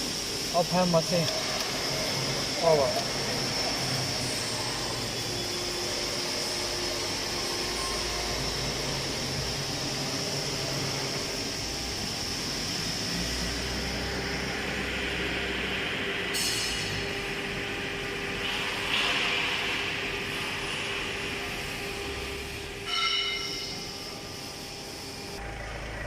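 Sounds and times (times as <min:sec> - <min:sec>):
cnc router machine hum: 0:00.0 - 0:26.0
hiss: 0:16.3 - 0:17.0
short tone: 0:22.8 - 0:23.9.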